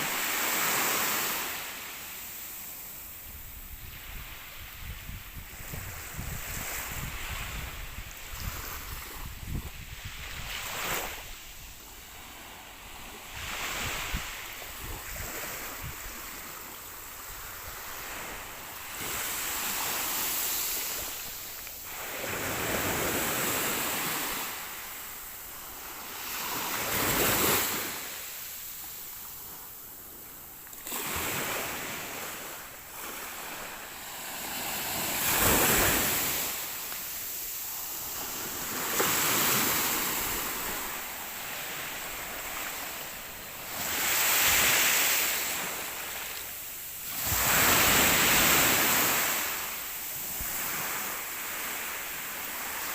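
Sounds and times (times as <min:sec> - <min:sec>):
wind on microphone: 0:03.2 - 0:11.9, 0:12.9 - 0:24.4
ocean waves breaking: 0:12.1 - 0:28.6, 0:30.7 - 0:52.9.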